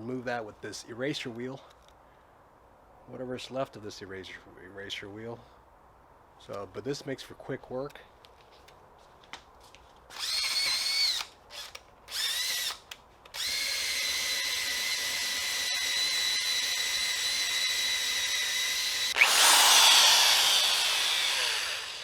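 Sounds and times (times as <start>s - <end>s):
power drill whining: 10.1s - 12.8s, 13.4s - 22.0s.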